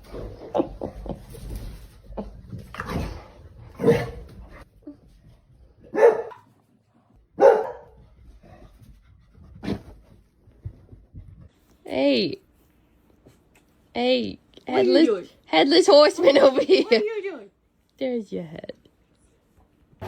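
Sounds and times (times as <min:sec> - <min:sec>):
dog barking: 0:05.9 - 0:06.5, 0:07.4 - 0:08.0.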